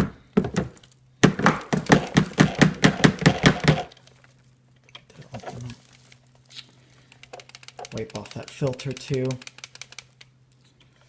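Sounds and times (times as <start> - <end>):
plastic bin rattling knocks: 0.0 - 3.9
faint handling sounds: 4.0 - 11.0.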